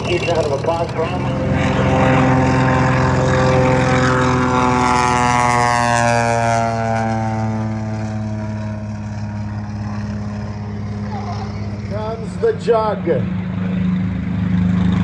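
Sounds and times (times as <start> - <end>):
propeller aircraft engine drone: 0.0 - 15.0.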